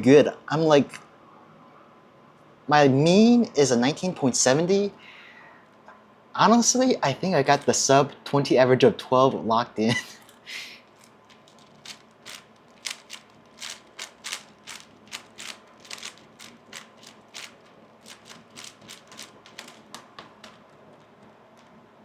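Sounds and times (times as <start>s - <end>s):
puzzle cube plastic clicks: 10.2s - 21.8s.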